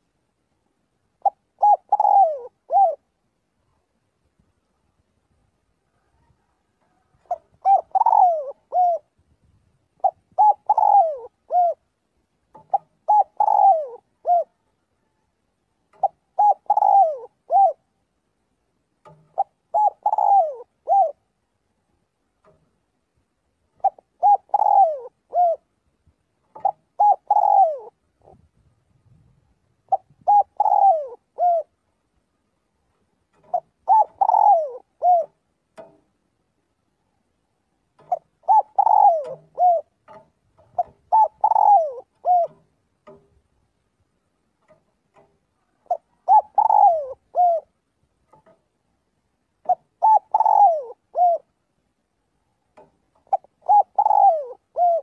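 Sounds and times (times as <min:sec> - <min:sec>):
dove cooing: 0:01.2 - 0:03.2, 0:05.9 - 0:09.2, 0:09.9 - 0:11.9, 0:12.5 - 0:15.2, 0:15.9 - 0:18.0, 0:19.0 - 0:21.4, 0:23.7 - 0:25.8, 0:26.4 - 0:28.5, 0:29.8 - 0:31.9, 0:33.3 - 0:36.0, 0:38.0 - 0:43.2, 0:44.6 - 0:48.6, 0:49.6 - 0:51.6, 0:52.8 - 0:55.0.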